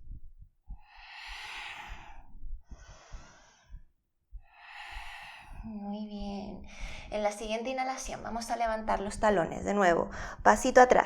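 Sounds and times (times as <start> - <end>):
woman breathing deeply: 0.7 - 5.8, 6.6 - 7.2, 10.1 - 10.5.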